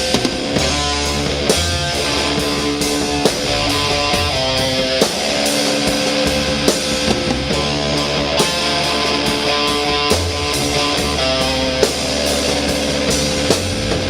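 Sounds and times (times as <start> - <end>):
heavy rock music: 0.0 - 14.0
loud guitar chords: 0.0 - 14.0
steady drum beat: 0.0 - 14.0.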